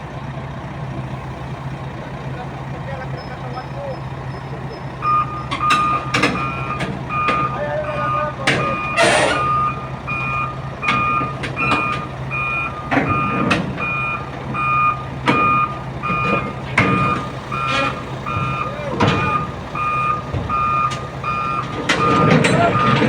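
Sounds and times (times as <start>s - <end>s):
diesel engine running: 0.0s - 23.0s
backup alarm beeping: 3.1s - 23.0s
sharp knocks and clanks: 5.0s - 23.0s.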